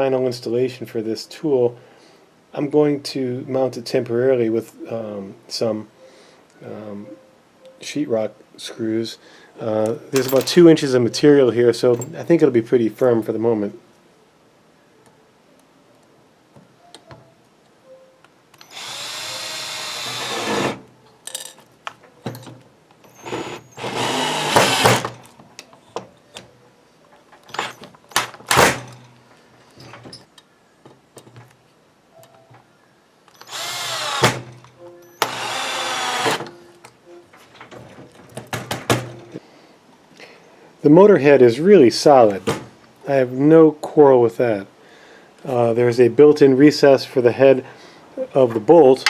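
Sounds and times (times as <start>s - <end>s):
power drill driving screws: 18.6s - 20.8s, 23.1s - 25.2s, 27.5s - 27.8s, 33.4s - 34.5s, 35.2s - 36.5s.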